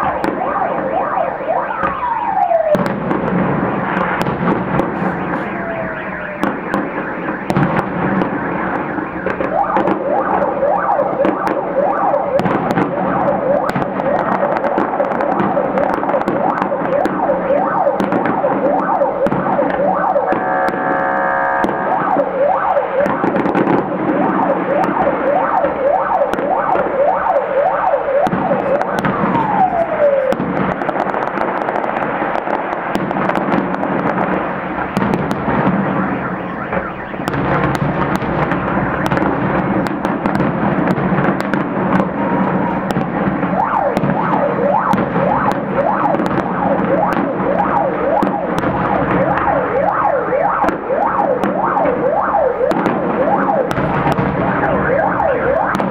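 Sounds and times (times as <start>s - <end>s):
fireworks bangs and crackles: 0.0s - 55.9s
firework whistles: 4.9s - 9.9s, 19.6s - 23.7s.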